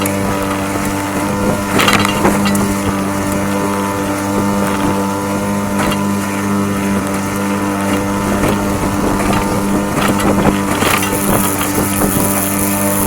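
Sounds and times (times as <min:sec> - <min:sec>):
outboard motor running: 0:00.0 - 0:13.0
water noise: 0:00.0 - 0:13.0
wind: 0:00.0 - 0:13.0.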